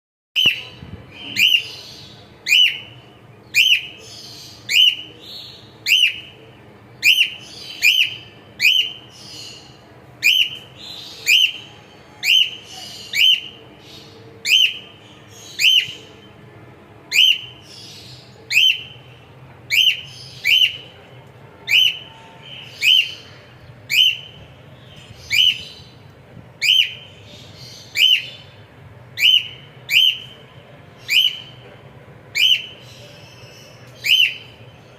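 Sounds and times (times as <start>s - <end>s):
cockatiel whistled chirps: 4.7s - 5.1s, 7.0s - 9.0s, 10.2s - 10.6s, 17.1s - 17.5s, 18.5s - 18.9s, 21.7s - 22.1s, 23.9s - 24.4s, 26.6s - 27.0s, 27.9s - 28.4s, 29.2s - 30.4s, 31.0s - 31.5s, 32.4s - 32.7s, 34.0s - 34.5s.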